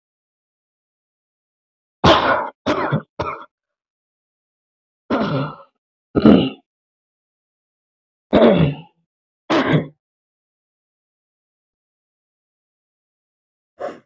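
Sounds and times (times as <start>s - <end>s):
person coughing: 2.0s - 3.5s, 5.1s - 6.6s, 8.3s - 8.9s, 9.5s - 10.0s.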